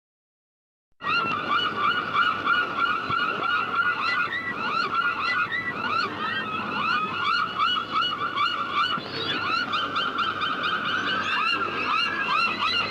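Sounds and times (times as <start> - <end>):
seagulls calling: 1.0 - 12.9.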